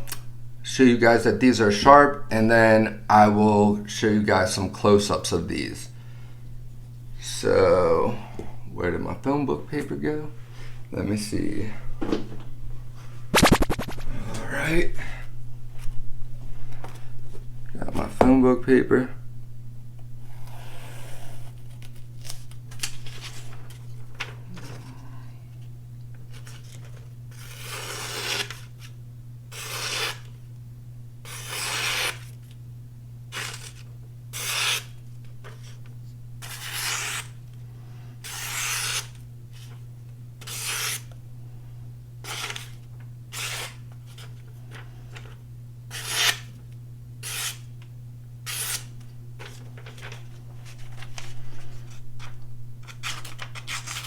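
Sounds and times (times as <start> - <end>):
knife slicing through paper: 36.4 - 37.4, 42.2 - 44.3.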